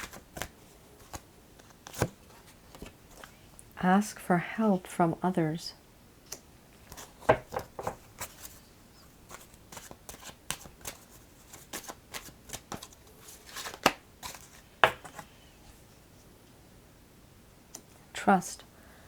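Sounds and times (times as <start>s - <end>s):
cards being shuffled: 0.0s - 3.3s, 9.3s - 15.3s.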